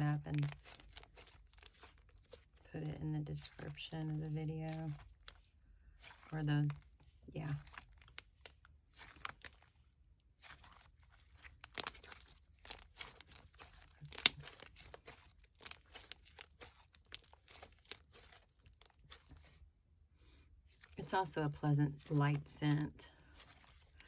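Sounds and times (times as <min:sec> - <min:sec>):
slime squished by hand: 0:00.0 - 0:02.7, 0:03.4 - 0:19.6.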